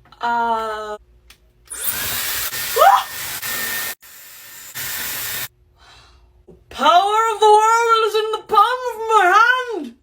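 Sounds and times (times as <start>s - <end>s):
hair dryer blowing air: 1.7s - 5.5s.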